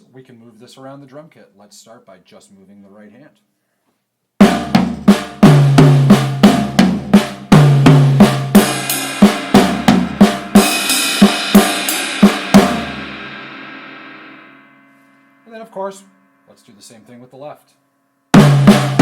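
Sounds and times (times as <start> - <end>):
drum kit playing: 4.4 - 16.2, 18.3 - 19.0
cymbal ringing: 8.6 - 19.0.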